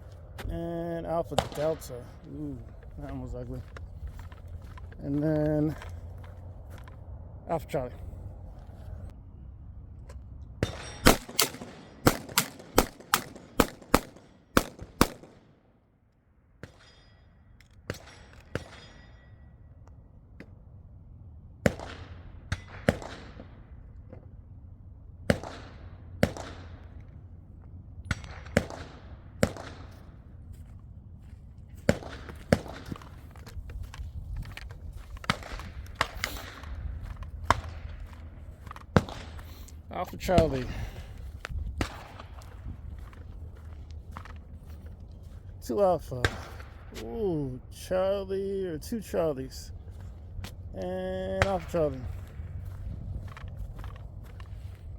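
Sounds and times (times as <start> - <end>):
gunshots: 1.2 - 3.3, 10.6 - 15.5, 21.6 - 23.6, 25.3 - 26.9, 28.1 - 30.1, 31.8 - 33.2, 38.9 - 39.6.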